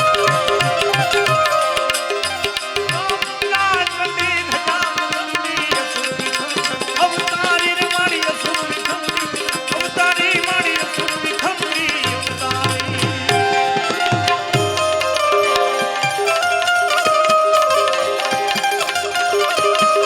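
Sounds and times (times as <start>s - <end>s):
tabla playing quick rhythm: 0.0s - 20.0s.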